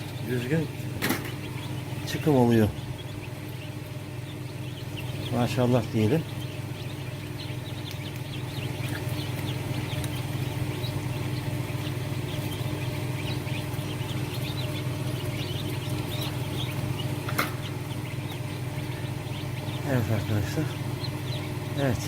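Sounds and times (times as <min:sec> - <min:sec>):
chicks peeping: 0:00.0 - 0:22.0
incubator fan hum: 0:00.0 - 0:22.0.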